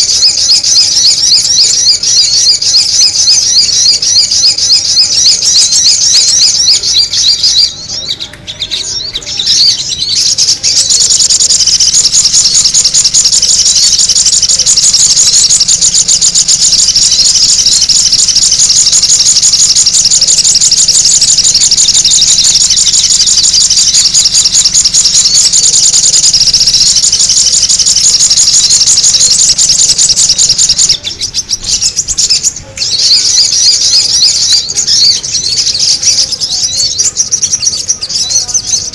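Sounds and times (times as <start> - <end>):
high-pitched bird chattering: 0.0 - 38.9.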